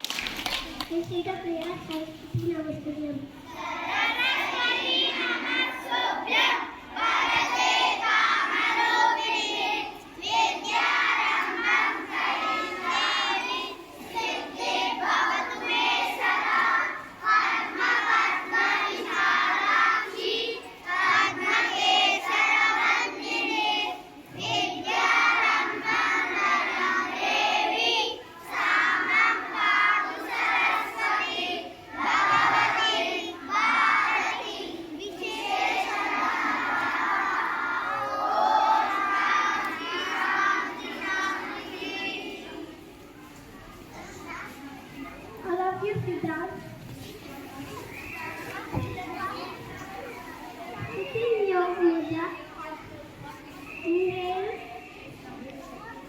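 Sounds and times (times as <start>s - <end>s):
children singing a prayer: 3.0s - 43.0s.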